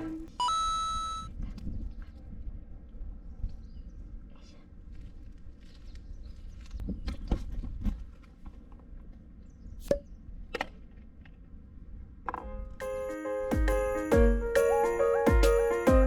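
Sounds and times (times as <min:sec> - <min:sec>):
chiming music jingle: 0:12.4 - 0:16.0.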